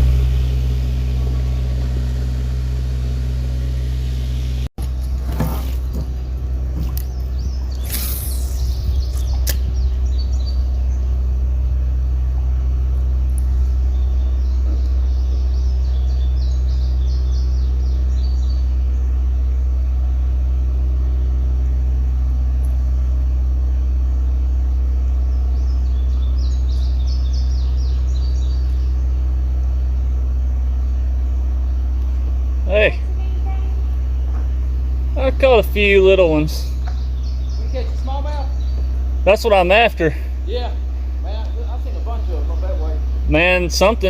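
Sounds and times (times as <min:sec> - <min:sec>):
low motor rumble: 0:00.0 - 0:44.0
bird chirps: 0:06.8 - 0:11.2, 0:13.4 - 0:19.4, 0:25.1 - 0:30.2, 0:33.3 - 0:39.6, 0:41.0 - 0:44.0.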